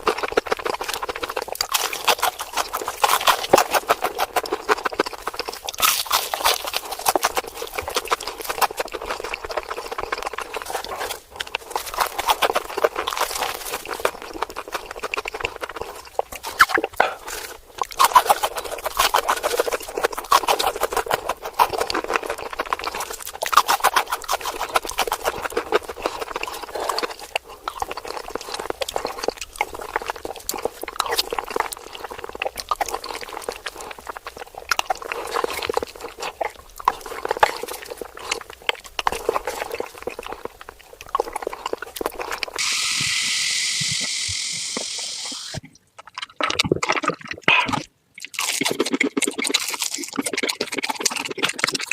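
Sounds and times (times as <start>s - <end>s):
sped-up wet chewing and crunching: 0.0s - 51.9s
steady hiss: 42.6s - 45.6s.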